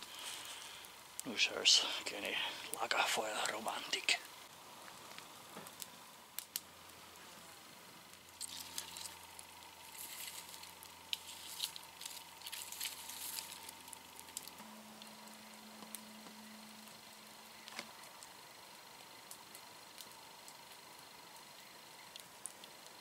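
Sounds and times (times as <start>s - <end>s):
campfire crackling and popping: 0.0s - 23.0s
faint low hum: 0.0s - 23.0s.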